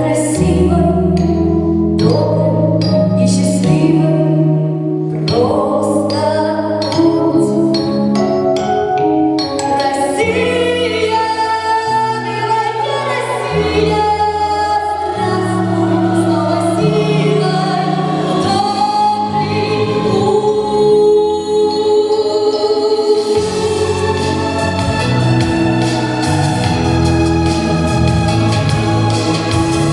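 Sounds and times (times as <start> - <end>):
held chords: 0.0 - 29.9
choir-like singing voices: 9.7 - 29.9
bass line: 12.2 - 21.4, 23.3 - 29.9.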